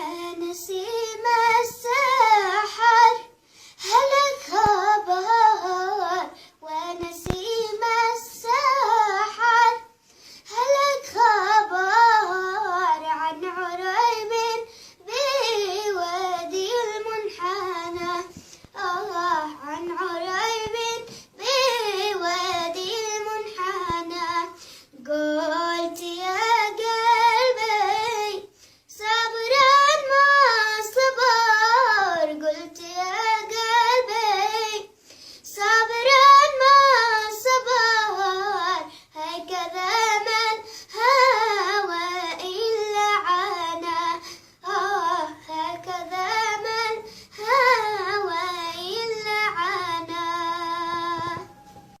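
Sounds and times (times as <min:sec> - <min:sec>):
girl singing unaccompanied: 0:00.0 - 0:52.0
girl breathing: 0:03.4 - 0:03.9, 0:06.3 - 0:06.6, 0:09.9 - 0:10.6, 0:14.6 - 0:15.1, 0:18.3 - 0:18.8, 0:21.0 - 0:21.4, 0:24.5 - 0:25.0, 0:28.5 - 0:28.9, 0:34.9 - 0:35.5, 0:38.8 - 0:39.2, 0:40.6 - 0:41.0, 0:44.1 - 0:44.6, 0:47.0 - 0:47.4.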